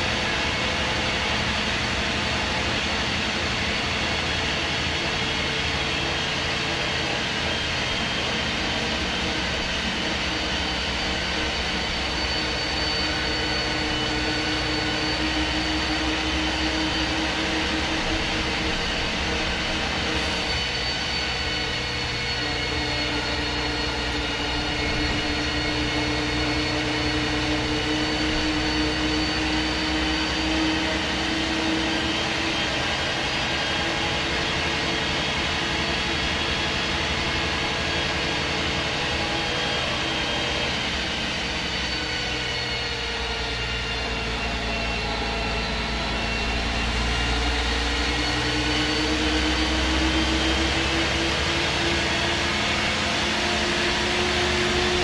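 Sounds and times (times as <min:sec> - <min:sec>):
bus diesel engine running: 0:17.4 - 0:29.7.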